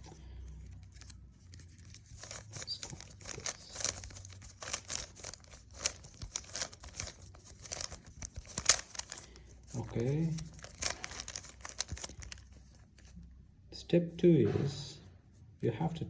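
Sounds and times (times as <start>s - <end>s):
plastic puzzle cube clicking: 0.8s - 13.1s.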